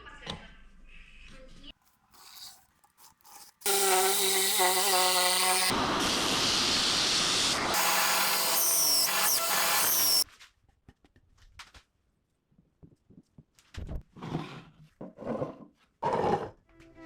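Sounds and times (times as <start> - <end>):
power tool cutting wood: 3.2 - 10.2
power tool motor whine: 3.6 - 10.2.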